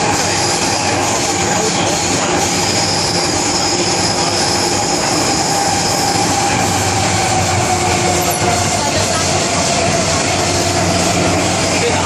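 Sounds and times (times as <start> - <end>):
steady whining tones: 0.0 - 12.0
train wheels rumbling on rails: 0.0 - 12.0.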